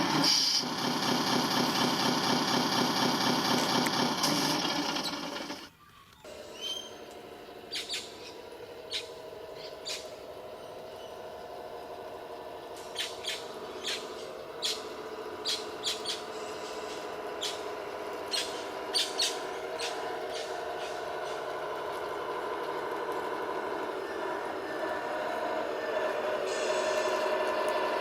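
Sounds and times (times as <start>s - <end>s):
small electric motors whining: 0.0s - 28.0s.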